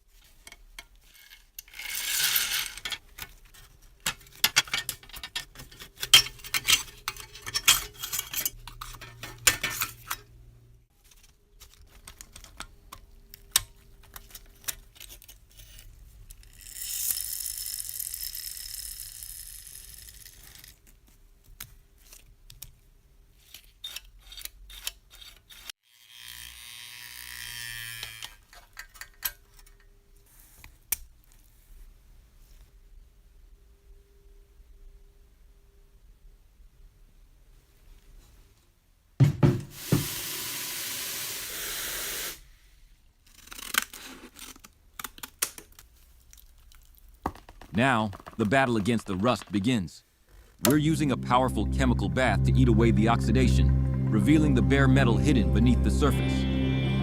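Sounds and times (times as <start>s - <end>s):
small metal parts clinking: 1.0s - 10.2s.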